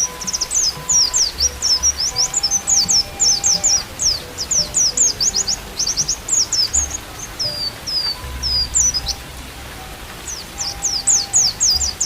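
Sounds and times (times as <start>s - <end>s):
bird singing: 0.0s - 12.0s
rain hiss: 0.0s - 12.0s.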